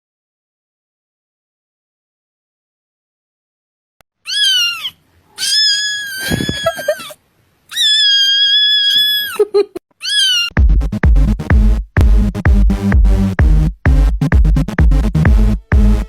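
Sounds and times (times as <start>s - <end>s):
cat meowing: 4.3s - 9.4s, 10.0s - 10.6s
electronic dance music: 10.6s - 16.0s.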